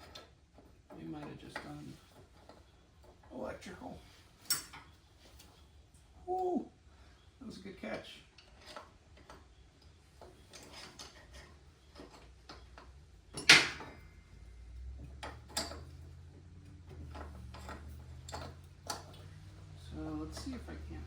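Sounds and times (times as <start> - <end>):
metal parts clicking and knocking: 0.0 - 3.4, 4.4 - 5.0, 8.3 - 21.0.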